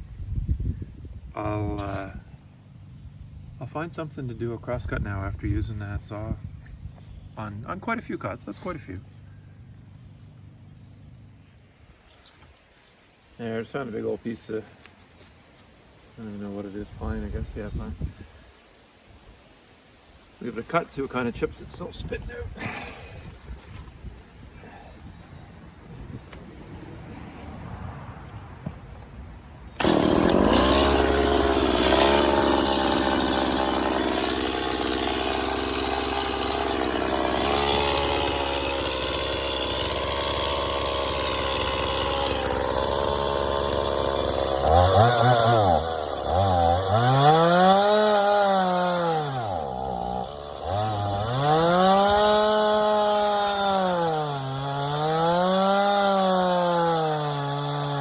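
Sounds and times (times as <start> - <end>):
chainsaw cutting log: 1.7 - 2.2, 29.8 - 58.0.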